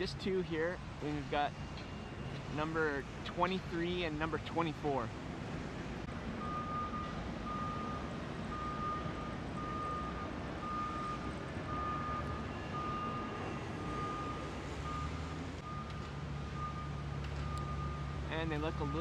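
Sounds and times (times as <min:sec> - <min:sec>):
low rumble of engines and traffic: 0:00.0 - 0:19.0
reversing alarm beeps: 0:06.4 - 0:16.0, 0:16.6 - 0:19.0.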